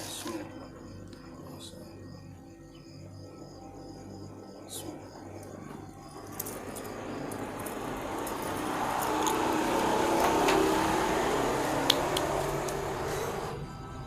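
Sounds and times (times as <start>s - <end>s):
vehicle passing by: 5.6s - 14.0s.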